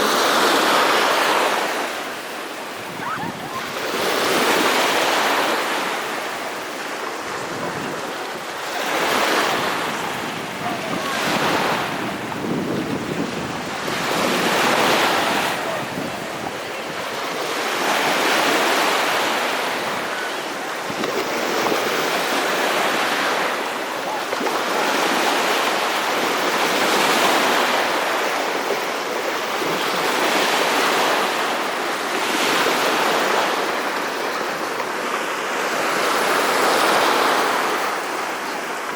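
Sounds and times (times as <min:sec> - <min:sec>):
sea waves breaking: 0:00.0 - 0:38.9
wind buffeting the microphone: 0:02.8 - 0:04.4, 0:07.2 - 0:08.4, 0:09.2 - 0:18.3.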